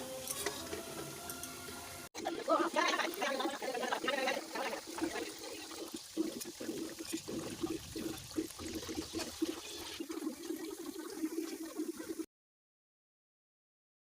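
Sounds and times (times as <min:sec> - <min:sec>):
water rushing: 0:00.8 - 0:12.2.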